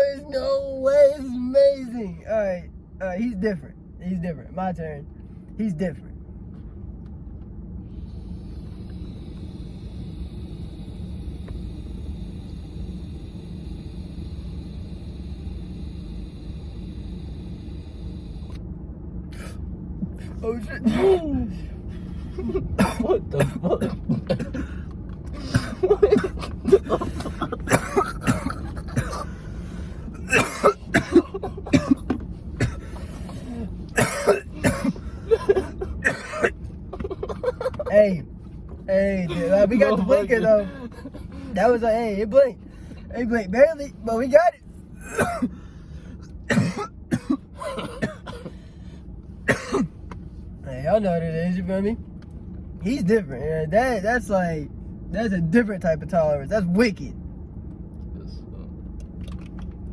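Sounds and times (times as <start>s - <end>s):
car cabin rumble and hiss: 0.0s - 59.9s
man coughing hard: 20.2s - 21.7s, 22.3s - 29.4s, 30.1s - 38.0s, 39.3s - 41.6s, 45.0s - 45.7s, 46.4s - 48.6s, 49.4s - 50.0s
throat clearing: 22.8s - 24.8s, 25.4s - 29.4s, 30.2s - 32.9s, 33.5s - 37.1s, 45.0s - 45.6s, 46.5s - 48.6s, 49.5s - 49.9s.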